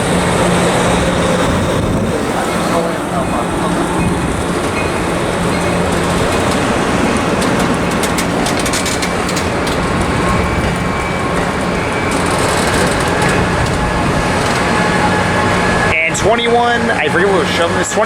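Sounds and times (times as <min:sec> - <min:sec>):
diesel locomotive engine hum: 0:00.0 - 0:18.0
train wheels rumbling on rail: 0:00.0 - 0:18.0
wheel clicks over rail joints: 0:03.6 - 0:15.6.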